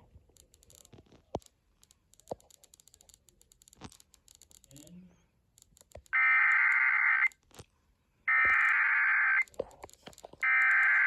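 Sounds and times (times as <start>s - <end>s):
harsh digital data bursts: 8.3s - 9.5s, 10.4s - 11.0s.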